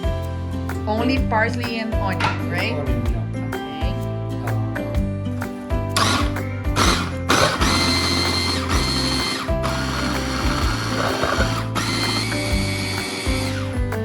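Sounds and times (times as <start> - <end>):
background music: 0.0 - 14.0
food processor whirring: 6.0 - 13.8.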